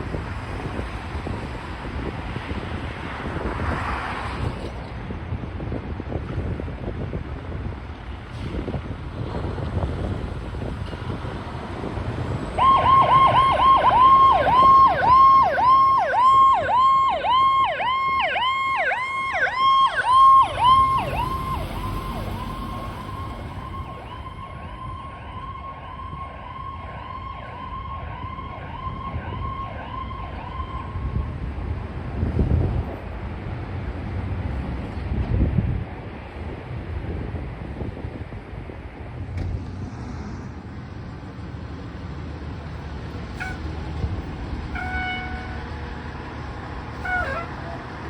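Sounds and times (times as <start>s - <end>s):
engine and road rumble: 0.0s - 48.0s
fire truck siren yelping: 12.5s - 31.3s, 44.7s - 48.0s.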